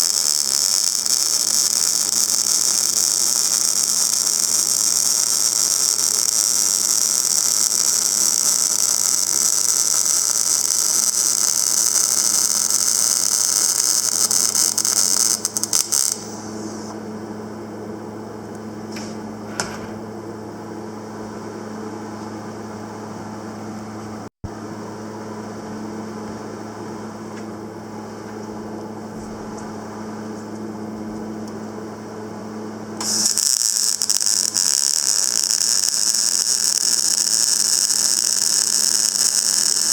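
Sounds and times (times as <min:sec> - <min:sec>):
welding arc hissing and crackling: 0:00.0 - 0:16.9, 0:33.0 - 0:39.9
transformer hum: 0:00.0 - 0:23.6.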